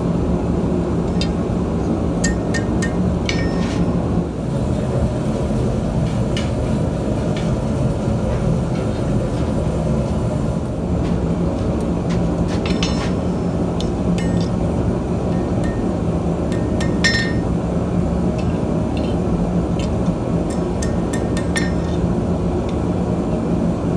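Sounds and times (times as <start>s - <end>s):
faint metallic clinks: 15.3s - 17.5s.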